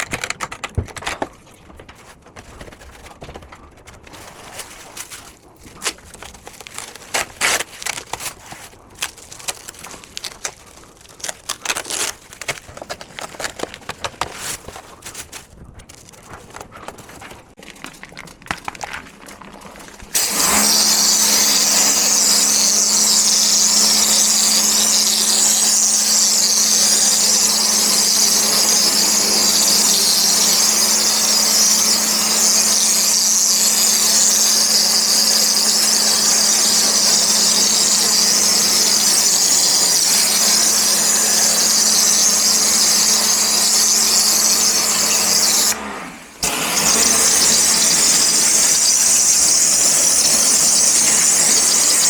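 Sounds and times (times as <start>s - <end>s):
pressure washer spraying: 20.1s - 52.0s
pump motor hum: 20.1s - 52.0s.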